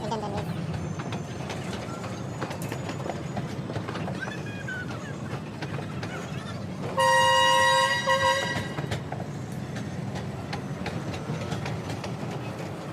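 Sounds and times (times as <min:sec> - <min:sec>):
rail machine rumbling and clicking: 0:00.0 - 0:12.9
machine horn blasts: 0:07.0 - 0:08.7.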